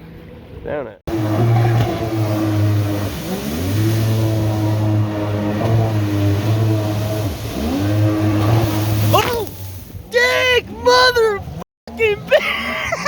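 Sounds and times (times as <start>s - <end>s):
jet ski engine revving: 1.1s - 13.0s.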